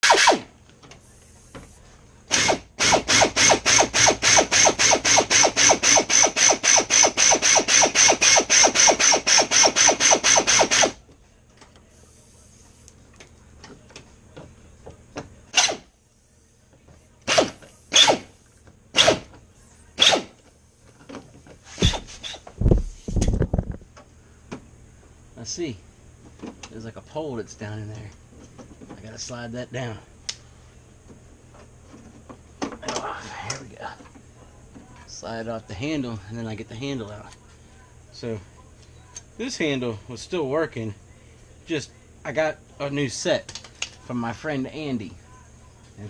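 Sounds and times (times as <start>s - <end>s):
power tool pulsing: 0.0s - 0.5s, 2.3s - 11.0s, 17.3s - 18.3s, 20.0s - 20.3s.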